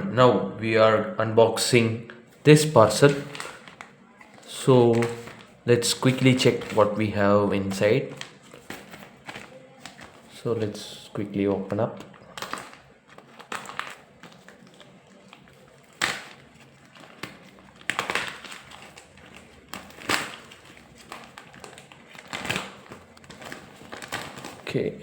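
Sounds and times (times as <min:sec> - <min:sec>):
packaging rustling and crinkling: 0:02.3 - 0:24.9.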